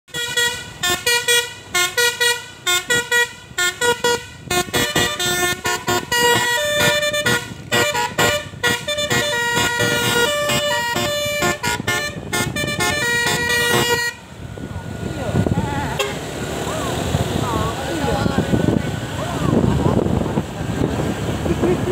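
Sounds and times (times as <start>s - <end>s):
multi-tone bus horn tune: 0.1s - 14.4s, 15.4s - 16.6s.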